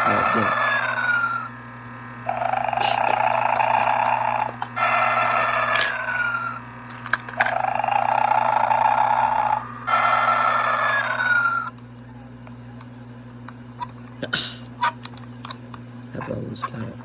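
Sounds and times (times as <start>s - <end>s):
recorded toy snoring: 0.0s - 11.7s
low steady hum: 0.0s - 17.0s.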